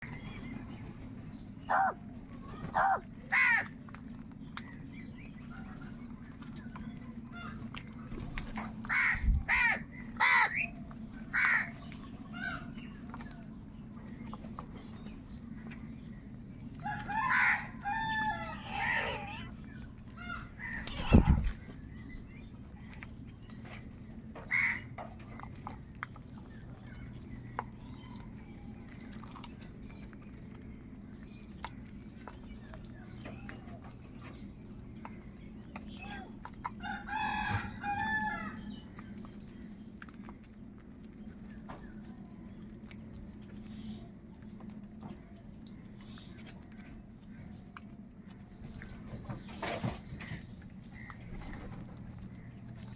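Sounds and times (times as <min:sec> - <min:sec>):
steady low hum: 0:00.0 - 0:52.9
crows cawing: 0:01.7 - 0:02.0, 0:02.8 - 0:03.8, 0:08.9 - 0:10.7, 0:11.3 - 0:11.7, 0:24.4 - 0:24.9.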